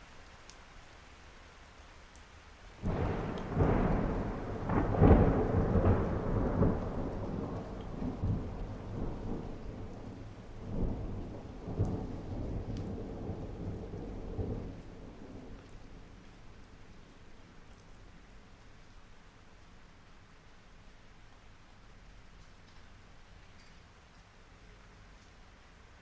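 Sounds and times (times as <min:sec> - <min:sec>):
rain falling: 0:00.0 - 0:26.0
thunder rumbling: 0:02.8 - 0:17.0.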